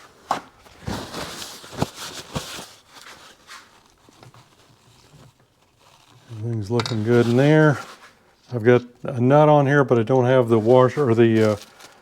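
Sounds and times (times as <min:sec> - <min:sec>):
rustling: 0:00.0 - 0:08.8, 0:10.4 - 0:12.0.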